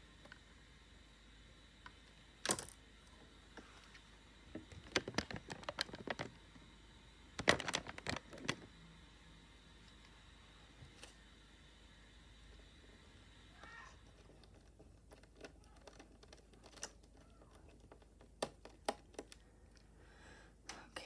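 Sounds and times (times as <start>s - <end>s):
sharp clicks of laptop parts: 15.1s - 19.4s.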